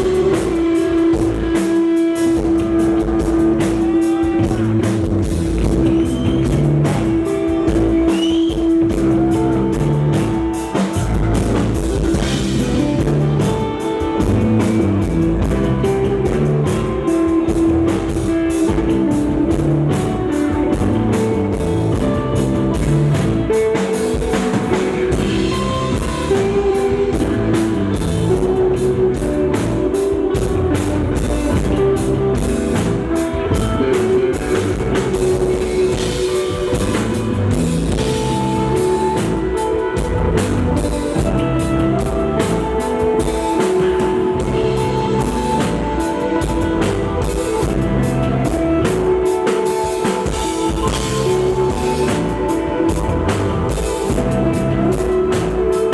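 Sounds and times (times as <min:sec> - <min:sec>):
drum kit beat: 0:00.0 - 0:55.9
electric guitar sustained notes: 0:00.0 - 0:55.9.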